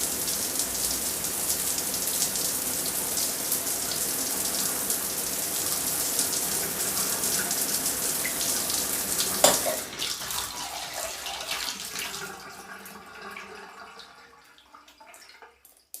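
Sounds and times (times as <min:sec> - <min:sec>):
water dripping: 0:00.0 - 0:10.6, 0:13.2 - 0:16.0
shower spray running: 0:00.0 - 0:12.2.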